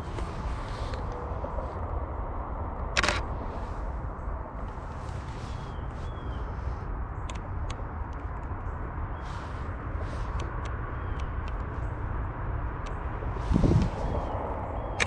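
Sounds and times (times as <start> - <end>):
low rushing noise: 0.0 - 15.0
sharp clicks: 2.8 - 3.3, 7.2 - 8.7, 10.2 - 11.8.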